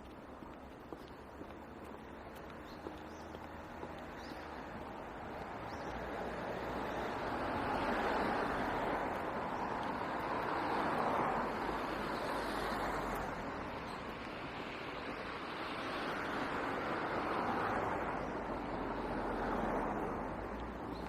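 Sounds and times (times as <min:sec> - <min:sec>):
passing cars: 0:00.0 - 0:21.0.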